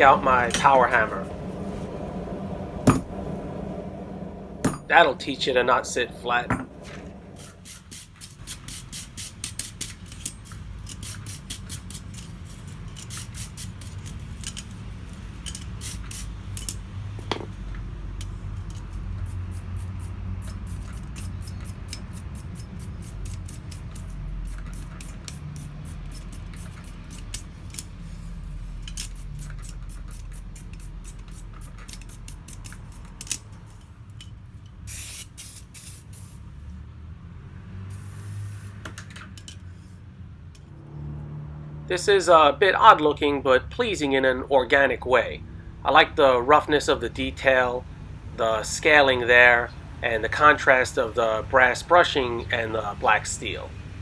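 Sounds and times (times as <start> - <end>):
low hum: 0.0 - 7.6
wire brush scrubbing steel: 0.0 - 17.4, 18.2 - 33.4.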